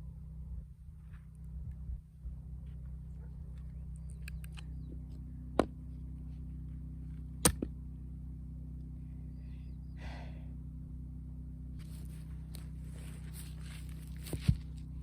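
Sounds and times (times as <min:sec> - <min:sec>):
axe striking firewood: 0:05.6 - 0:05.8, 0:07.4 - 0:07.8, 0:14.2 - 0:14.7
rustling scrape: 0:11.8 - 0:14.8.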